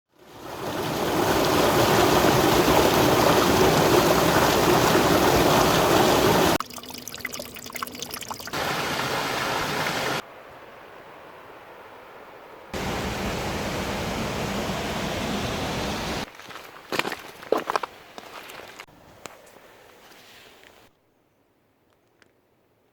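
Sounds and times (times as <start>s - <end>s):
mountain stream rushing: 0.2s - 6.6s, 8.2s - 16.3s.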